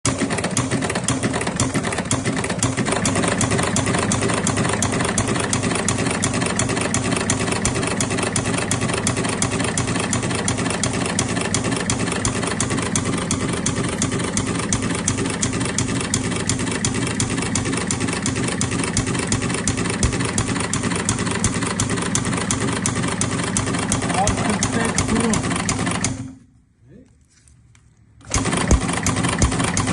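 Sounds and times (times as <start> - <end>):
engine idling: 0.1 - 26.3, 28.3 - 29.9
fast regular ticking: 2.8 - 26.2.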